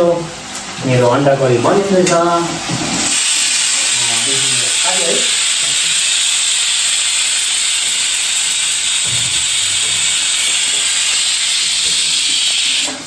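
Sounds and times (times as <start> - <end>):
pressure cooker steam hiss: 2.8 - 13.0
pressure cooker whistle: 3.1 - 4.2, 5.3 - 13.0.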